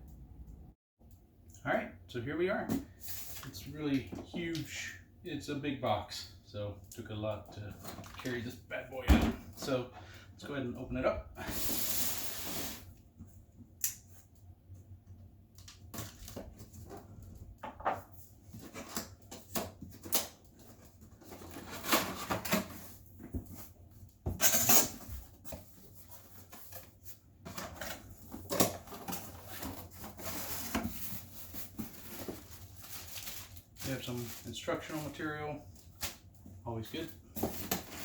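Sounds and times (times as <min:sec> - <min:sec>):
packaging rustling: 0:27.5 - 0:35.2.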